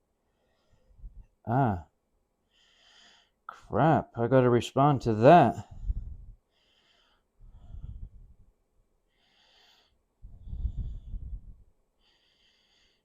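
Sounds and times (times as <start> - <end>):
person breathing close to mic: 0.2 - 1.3, 2.4 - 3.5, 5.6 - 8.5, 9.1 - 13.0.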